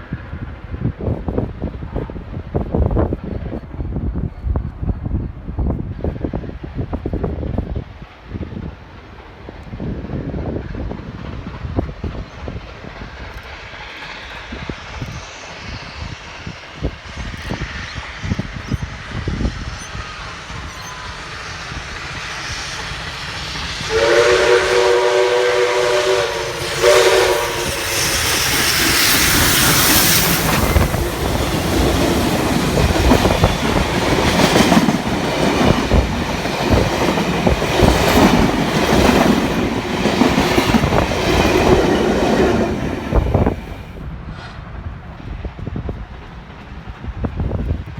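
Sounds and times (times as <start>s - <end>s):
train wheels clattering: 10.6s - 44.6s
train horn blasts: 23.8s - 29.0s.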